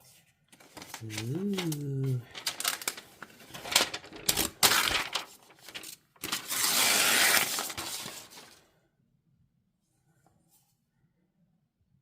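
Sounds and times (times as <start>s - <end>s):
wrapping rustling: 0.5s - 8.6s.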